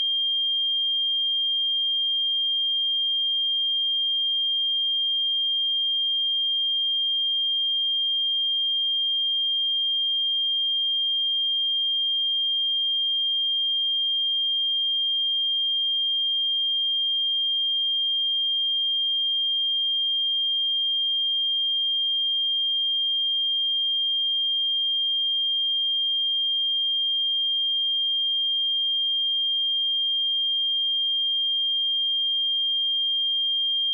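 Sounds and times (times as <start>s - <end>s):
high-pitched sine-wave test tone: 20.5s - 33.9s.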